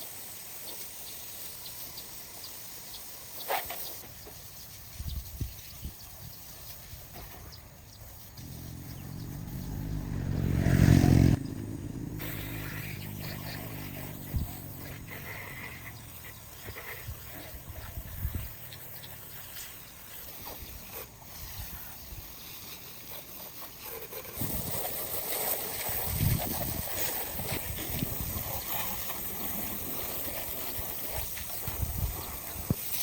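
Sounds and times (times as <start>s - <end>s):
engine revving: 8.2s - 16.7s
engine running low: 8.2s - 17.1s.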